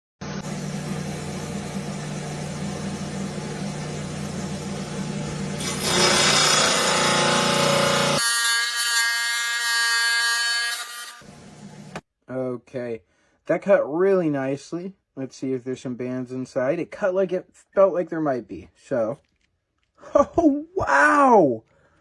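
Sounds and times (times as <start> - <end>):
motor hum: 0.2 - 8.2
saw blade grinding stone: 5.6 - 11.3.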